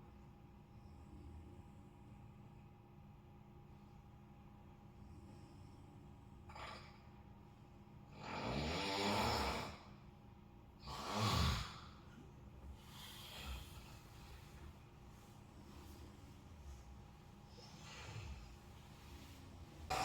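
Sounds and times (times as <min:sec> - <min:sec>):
person snoring loudly: 0:08.2 - 0:09.9, 0:10.8 - 0:11.9
soft breath: 0:10.9 - 0:20.0.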